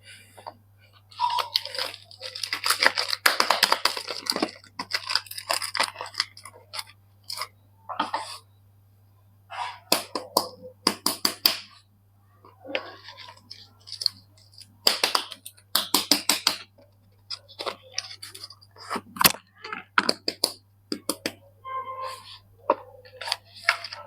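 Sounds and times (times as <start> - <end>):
wrapper crinkling and crackling: 0.9 - 7.5, 12.8 - 20.6, 23.0 - 24.0.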